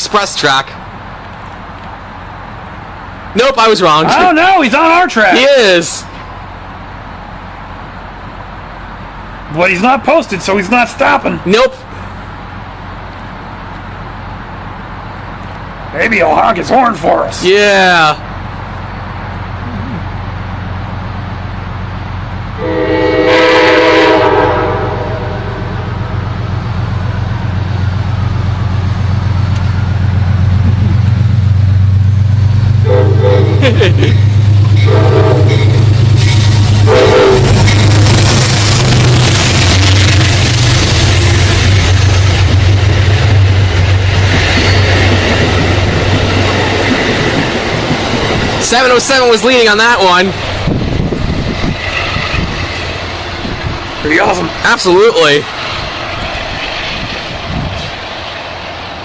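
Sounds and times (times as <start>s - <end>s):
locomotive engine droning: 0.0s - 59.0s
train wheels rushing on rails: 0.0s - 59.0s
locomotive horn blast: 22.6s - 26.4s, 32.8s - 34.0s, 34.6s - 39.6s.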